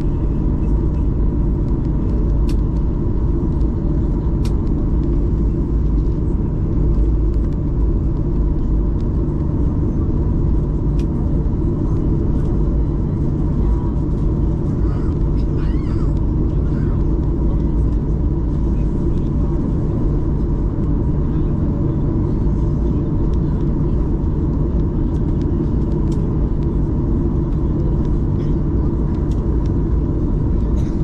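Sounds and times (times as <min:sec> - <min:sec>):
airplane cabin engine rumble: 0:00.0 - 0:31.0
faint steady hum: 0:00.0 - 0:31.0.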